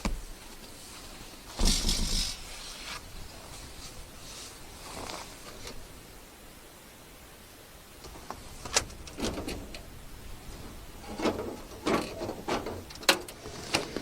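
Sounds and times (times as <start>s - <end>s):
rustling scrapes: 0.5s - 5.8s, 8.1s - 14.0s
sharp clicks and knocks: 8.0s - 9.9s, 10.5s - 14.0s.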